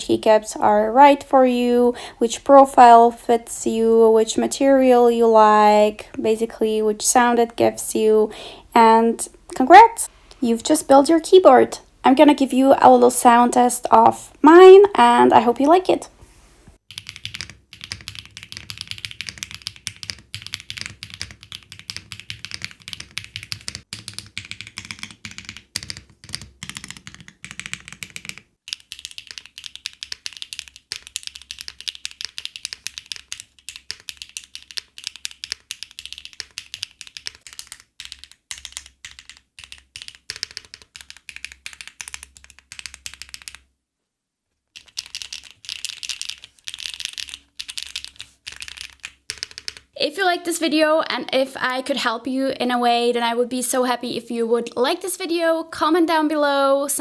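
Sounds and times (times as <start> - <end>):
mechanical keyboard typing clacks: 16.9 - 43.6.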